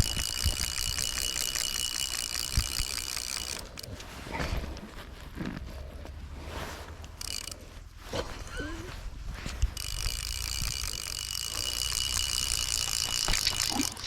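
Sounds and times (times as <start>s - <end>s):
fly reel ratchet clicking: 0.0s - 3.9s, 7.0s - 7.7s, 9.5s - 14.0s.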